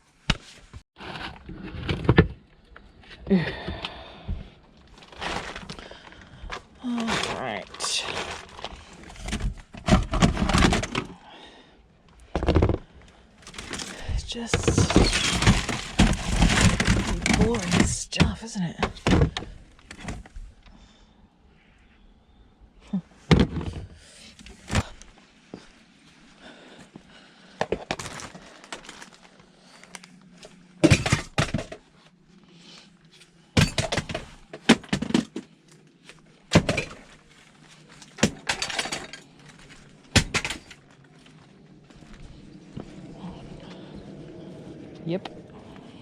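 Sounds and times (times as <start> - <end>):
scrap clattering and knocking: 7.0 - 11.1, 13.5 - 20.2.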